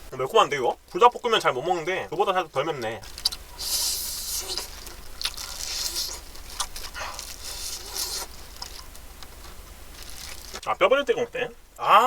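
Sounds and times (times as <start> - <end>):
chewing crispy fried chicken: 2.8 - 10.7.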